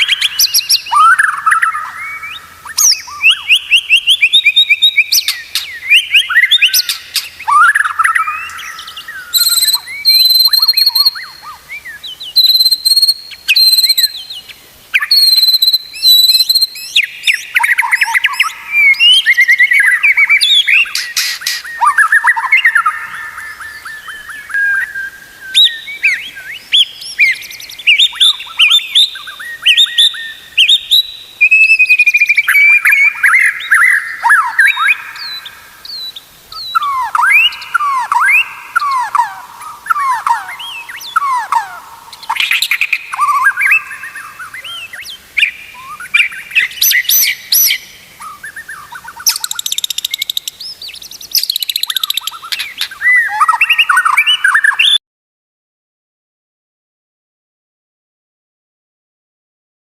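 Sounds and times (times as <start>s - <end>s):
high fast bird trills: 0.0s - 11.6s
bird singing whistled phrases: 0.0s - 55.0s.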